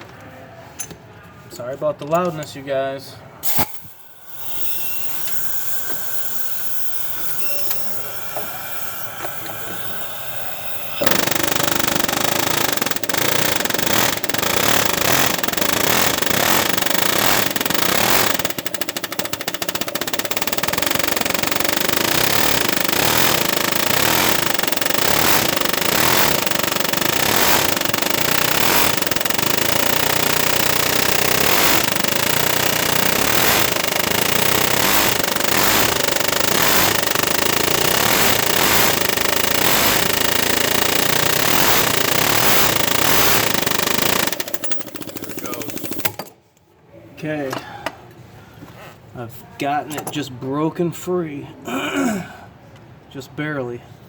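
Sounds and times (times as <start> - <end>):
rapid power hammering on metal: 6.7 - 46.2.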